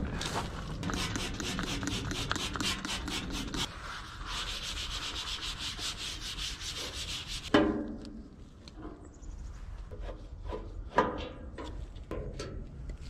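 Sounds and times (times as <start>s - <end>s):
hand scrubbing a surface: 0.3s - 7.5s.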